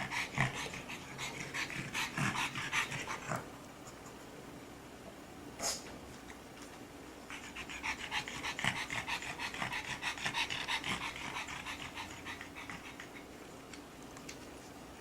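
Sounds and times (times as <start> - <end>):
dog panting rapidly: 0.0 - 3.4, 7.3 - 13.3.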